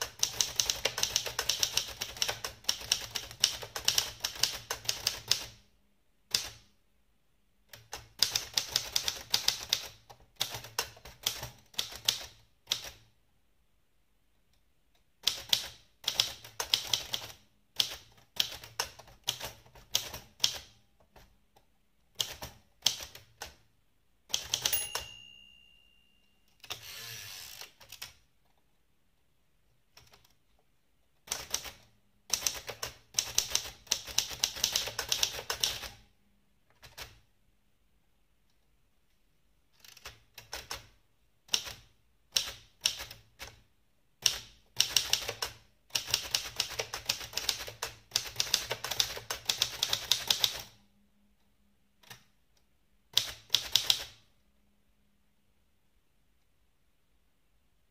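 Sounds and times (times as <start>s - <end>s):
typewriter margin bell: 24.5s - 26.8s.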